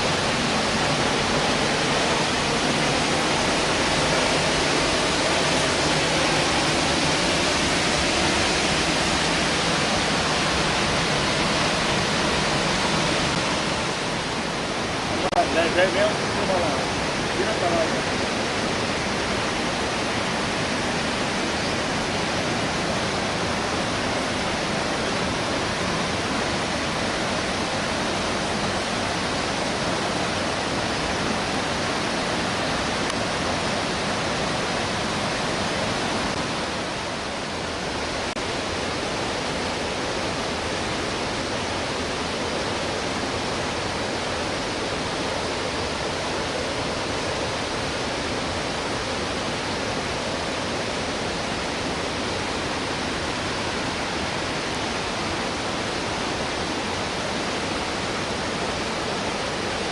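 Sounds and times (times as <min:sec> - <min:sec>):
waterfall rushing: 0:00.0 - 0:59.9.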